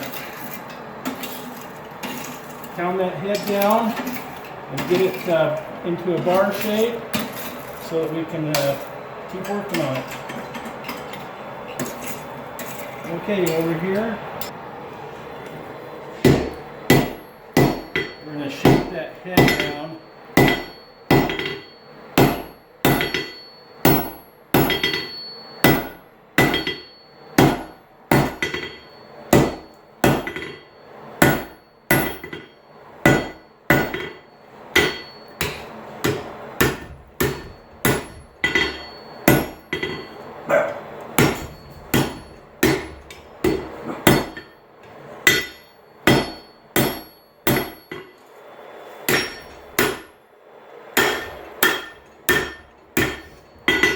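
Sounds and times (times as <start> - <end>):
hammer striking metal on anvil: 8.5 - 10.0, 16.2 - 44.6, 45.2 - 48.2, 49.1 - 50.2, 51.0 - 53.9.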